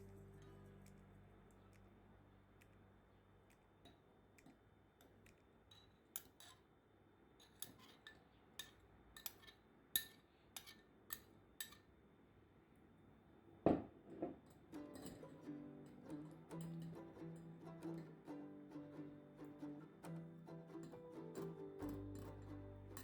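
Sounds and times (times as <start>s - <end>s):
utensils clinking against dishes: 14.5s - 15.8s, 16.4s - 18.0s.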